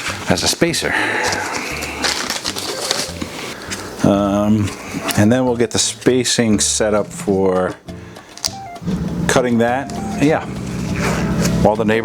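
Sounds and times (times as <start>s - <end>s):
music with low bass line: 6.9s - 11.6s.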